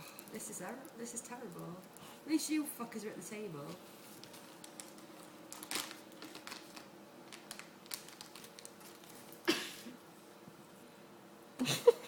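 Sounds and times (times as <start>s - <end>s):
paper crinkle: 3.8s - 9.5s.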